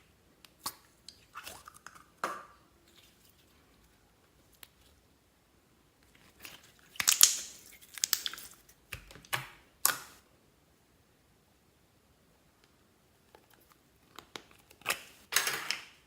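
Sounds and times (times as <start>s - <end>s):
slime crackling by hand: 6.2s - 9.0s.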